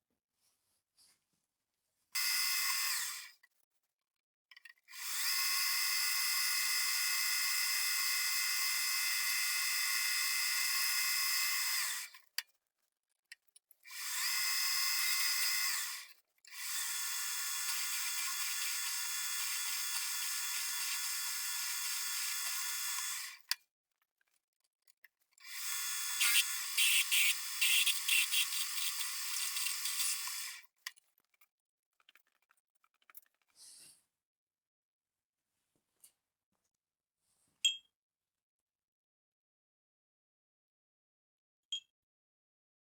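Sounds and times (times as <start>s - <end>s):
power tool whining: 15.0s - 23.4s, 25.5s - 30.6s.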